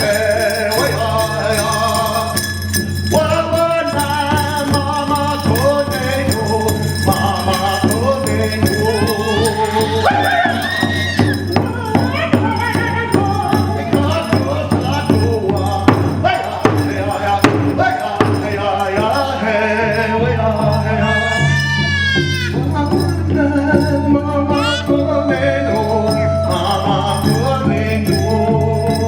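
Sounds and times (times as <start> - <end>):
man singing: 0.0 - 29.0
shaken rattle rhythm: 0.0 - 29.0.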